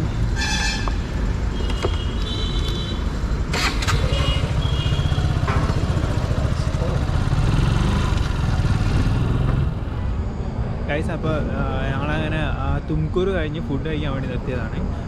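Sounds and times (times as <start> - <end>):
road and wind rumble: 0.0 - 15.0
car horns honking: 0.3 - 6.4
motorcycle engine running: 3.6 - 9.8.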